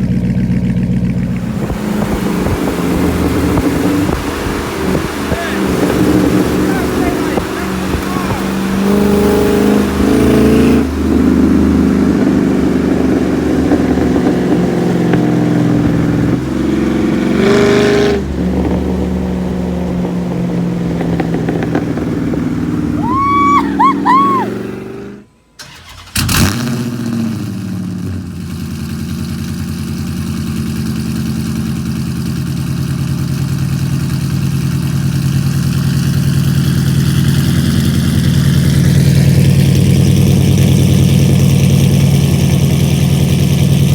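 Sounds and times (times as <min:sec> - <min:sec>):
car exhaust revving and idling: 0:00.0 - 0:25.4, 0:26.2 - 0:43.9
short high squeals: 0:23.0 - 0:24.6.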